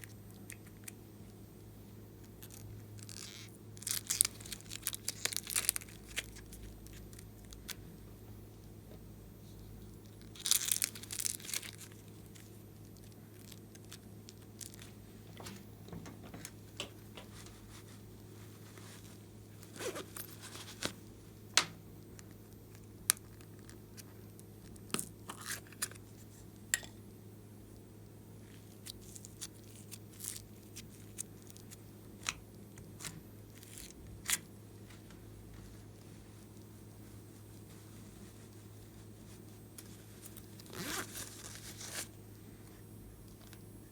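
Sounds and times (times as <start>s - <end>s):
slime crackling and popping: 2.3s - 7.8s, 10.0s - 14.9s.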